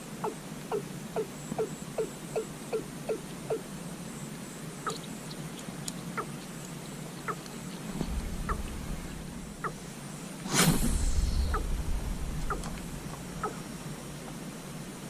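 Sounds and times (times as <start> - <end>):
steady outdoor hiss: 0.0 - 15.0
sharp chirping animal calls: 7.2 - 9.9, 12.4 - 13.7
loud rush of noise: 7.9 - 9.7, 10.4 - 13.8
low rumble: 7.9 - 9.9, 10.5 - 13.8.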